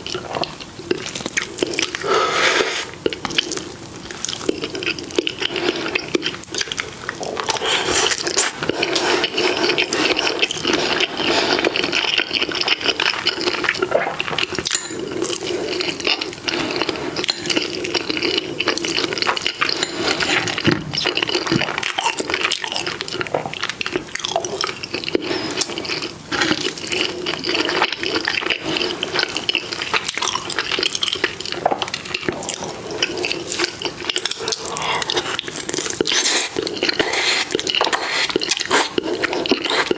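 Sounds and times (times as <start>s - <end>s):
wet chewing and smacking: 0.0s - 2.1s, 2.7s - 39.9s.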